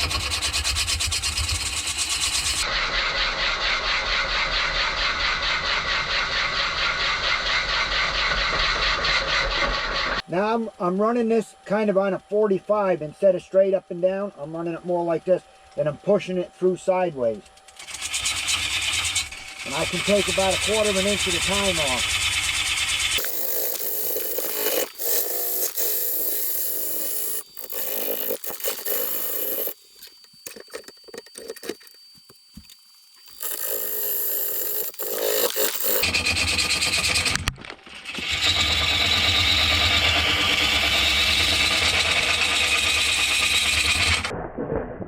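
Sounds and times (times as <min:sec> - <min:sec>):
gouge scraping spinning log on lathe: 0:03.3 - 0:10.2, 0:17.8 - 0:44.3.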